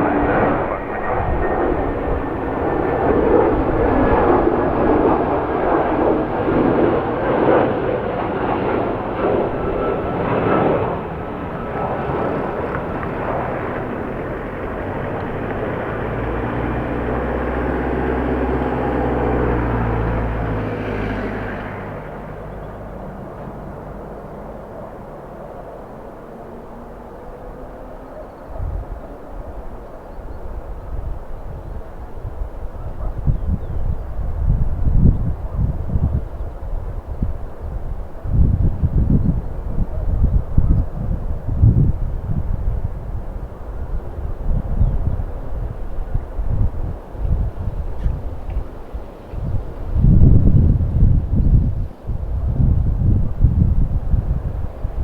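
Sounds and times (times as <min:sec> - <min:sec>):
jet engines landing: 0:00.0 - 0:55.0.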